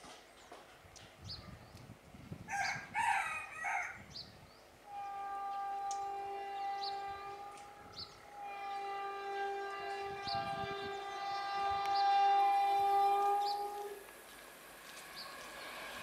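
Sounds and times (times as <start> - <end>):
locomotive air horn: 4.8 - 14.1.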